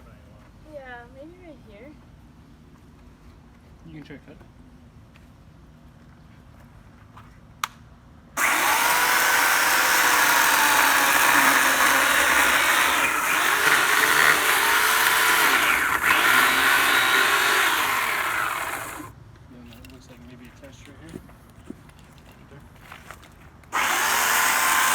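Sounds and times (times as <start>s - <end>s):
power saw cutting roots: 8.4s - 19.1s, 23.7s - 24.9s.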